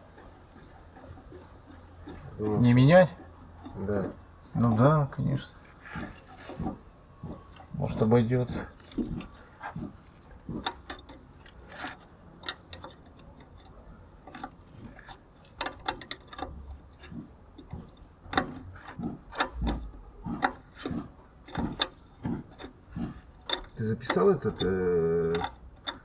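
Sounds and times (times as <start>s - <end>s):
metallic clicks and taps: 25.3s - 26.0s.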